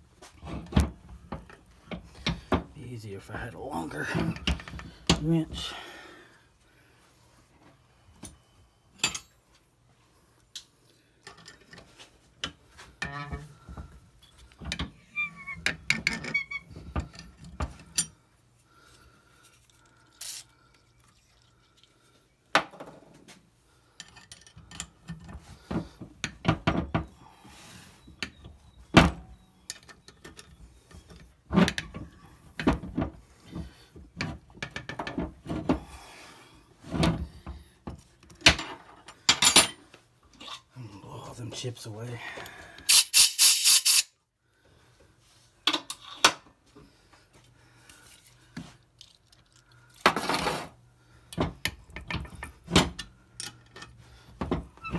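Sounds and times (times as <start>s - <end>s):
tap squeaking as it cuts: 15.0s - 17.0s.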